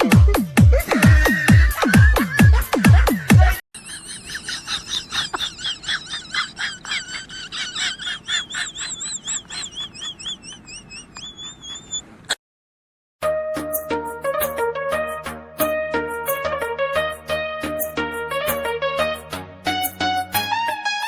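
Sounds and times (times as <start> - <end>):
small animal chirping: 8.8 - 12.1.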